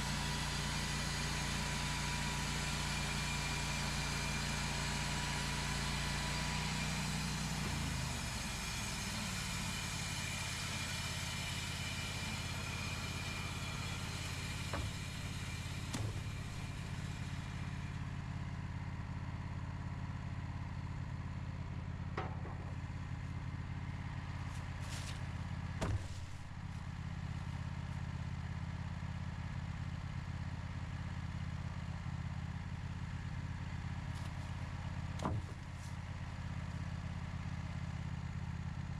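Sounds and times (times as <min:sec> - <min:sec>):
sawmill engine running: 0:00.0 - 0:38.9
sharp knocks: 0:22.2 - 0:22.9, 0:25.8 - 0:26.6.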